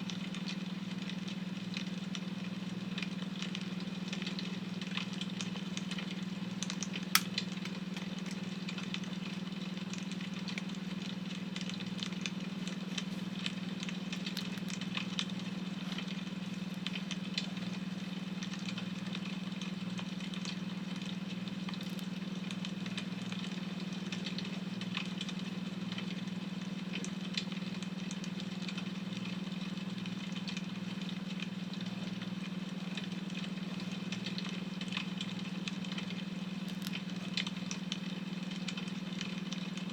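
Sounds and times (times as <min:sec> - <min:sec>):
wood fire crackling: 0:03.7 - 0:23.1
sharp pops of fire: 0:07.2 - 0:08.0.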